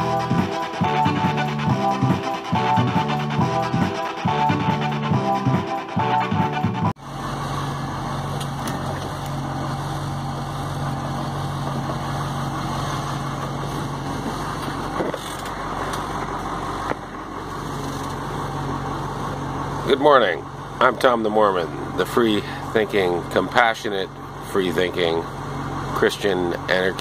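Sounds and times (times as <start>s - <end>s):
music intro: 0.0s - 7.2s
car engine humming: 0.0s - 27.0s.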